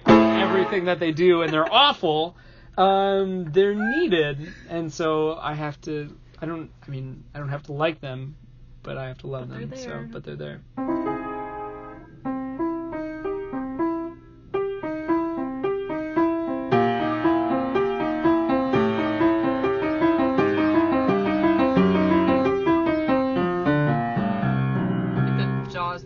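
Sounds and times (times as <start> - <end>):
piano playing: 0.0 - 2.0, 9.6 - 26.0.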